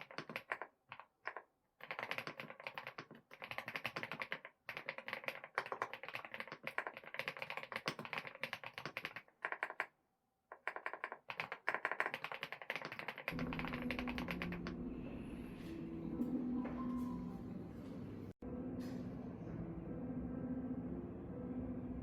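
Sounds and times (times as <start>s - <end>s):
fast typing on keyboard: 0.0s - 9.9s, 10.5s - 14.8s.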